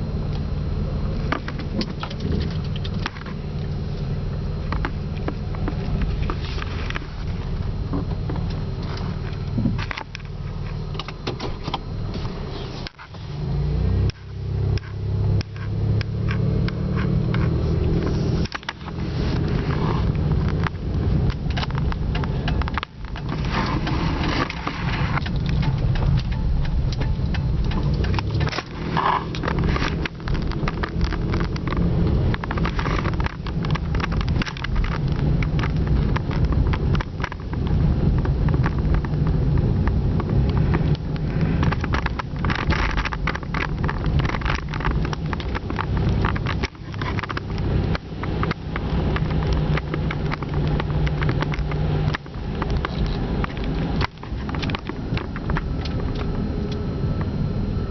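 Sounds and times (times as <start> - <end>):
road and engine rumble: 0.0 - 57.9
small knocks and rattles: 14.7 - 56.3.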